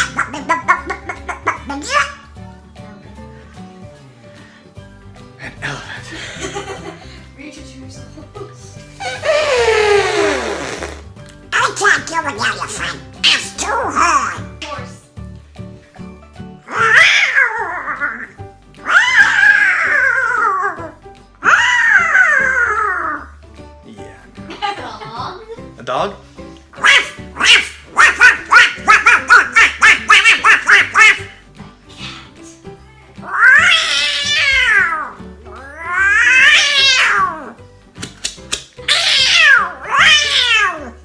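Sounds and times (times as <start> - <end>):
light pop music: 0.0 - 41.0
squawky duck voice whinnying: 26.8 - 31.4.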